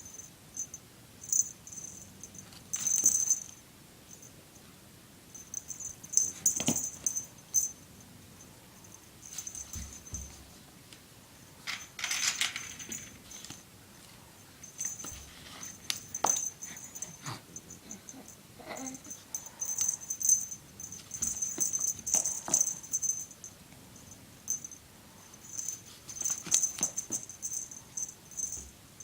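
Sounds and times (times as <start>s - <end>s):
cat toy rattling: 19.3s - 23.4s, 25.4s - 28.6s.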